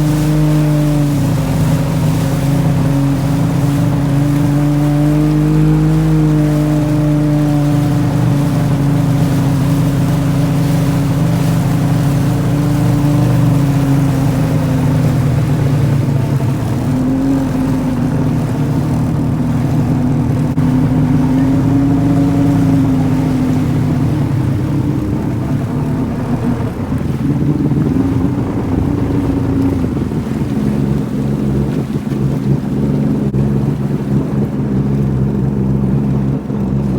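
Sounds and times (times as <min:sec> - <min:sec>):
jet ski engine running: 0:00.0 - 0:36.9.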